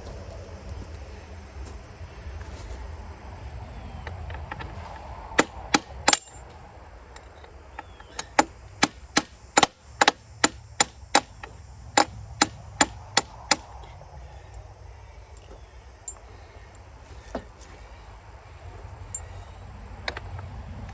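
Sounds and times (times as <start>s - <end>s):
hammer blows: 4.3s - 14.0s.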